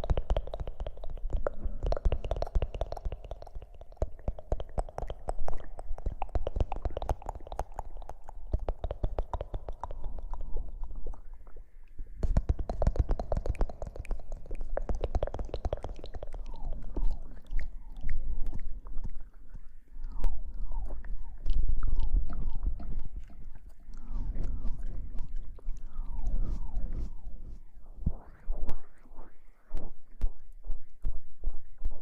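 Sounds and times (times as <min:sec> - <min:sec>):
low rumble: 0:22.0 - 0:32.0.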